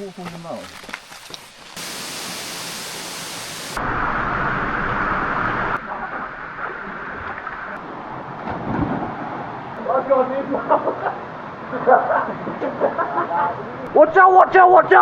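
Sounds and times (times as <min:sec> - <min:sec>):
waterfall rushing: 0:01.8 - 0:05.8.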